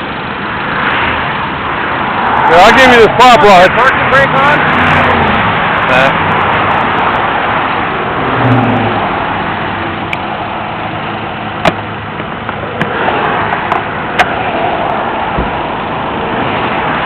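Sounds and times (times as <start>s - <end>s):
roadside traffic noise: 0.0s - 17.0s.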